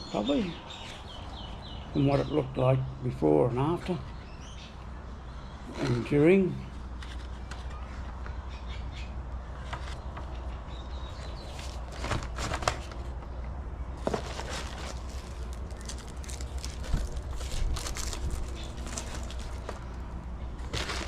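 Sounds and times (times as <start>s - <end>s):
tool kit clicks and rustling: 20.6s - 21.0s.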